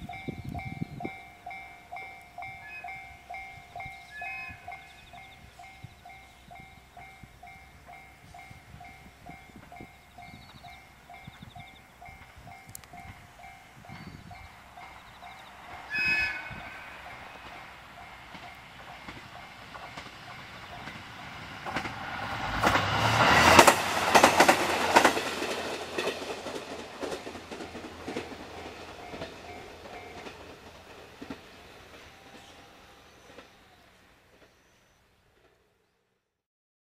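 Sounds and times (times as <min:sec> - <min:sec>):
level-crossing alarm dinging: 0:00.0 - 0:21.2, 0:27.7 - 0:30.4
diesel railcar passing: 0:00.0 - 0:36.3
train horn blast: 0:04.0 - 0:05.0, 0:15.7 - 0:17.8
wheel clatter over rail joints: 0:06.2 - 0:34.6.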